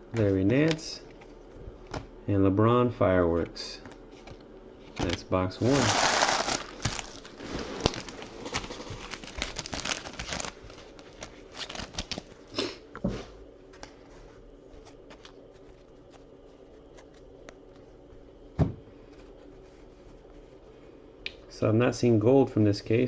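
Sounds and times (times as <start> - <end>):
plastic packaging crinkling and tearing: 5.0 - 12.5.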